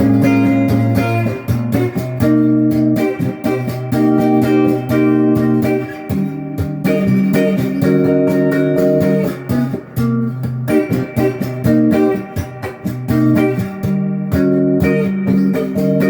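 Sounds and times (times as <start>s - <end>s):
clean electric guitar: 0.0s - 16.0s.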